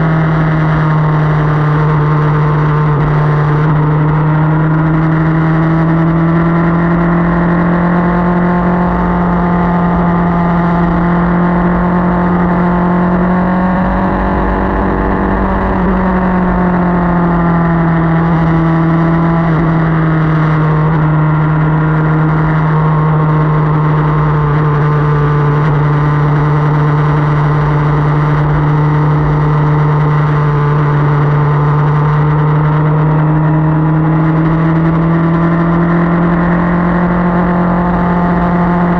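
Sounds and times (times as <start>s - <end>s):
motorcycle engine cruising: 0.0s - 38.9s
wind rumble on microphone: 8.6s - 38.9s.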